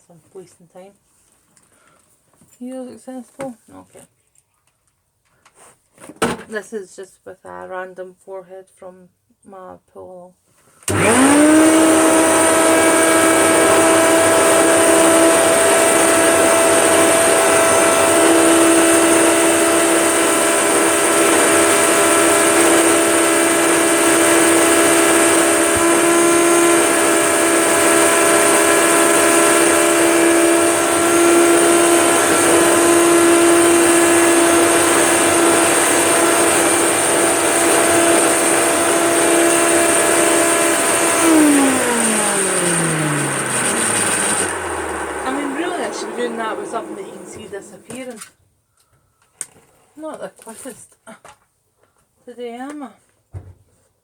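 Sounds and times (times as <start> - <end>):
vacuum motor running down: 10.9 - 48.0
vacuum cleaner running: 10.9 - 48.1.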